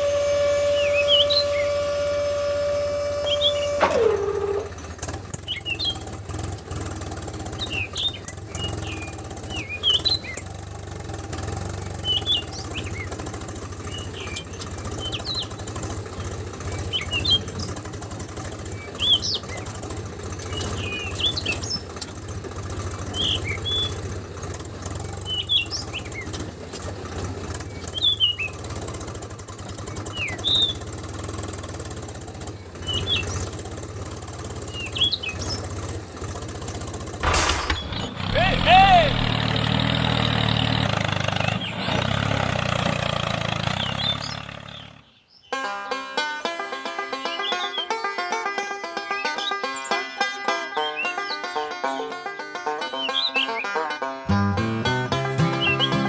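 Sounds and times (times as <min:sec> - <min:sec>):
bird chirping: 0:00.6 - 0:02.1, 0:03.1 - 0:04.1, 0:05.4 - 0:06.2, 0:07.3 - 0:10.6, 0:11.8 - 0:31.3, 0:31.9 - 0:36.8, 0:47.0 - 0:56.0.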